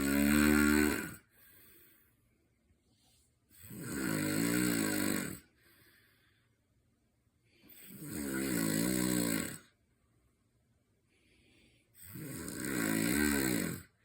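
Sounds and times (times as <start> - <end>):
person snoring: 0.0 - 1.8, 3.5 - 5.6, 7.6 - 9.8, 11.6 - 14.0.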